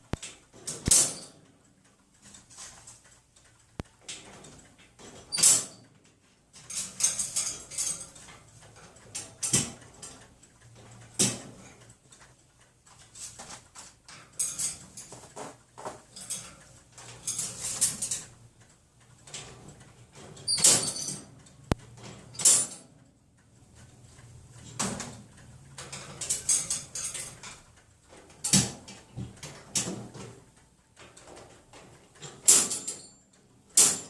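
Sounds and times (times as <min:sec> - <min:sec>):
metal cage door rattling: 0:00.5 - 0:01.4, 0:04.2 - 0:05.8, 0:06.6 - 0:10.2, 0:16.1 - 0:18.3, 0:19.3 - 0:21.3, 0:31.1 - 0:33.1, 0:33.7 - 0:34.0.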